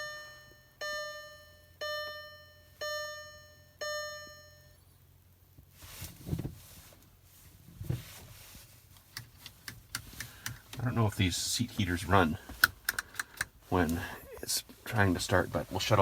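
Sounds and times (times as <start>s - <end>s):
car warning chime dinging: 0.0s - 4.8s
soft rustling: 5.4s - 11.0s, 13.5s - 16.0s.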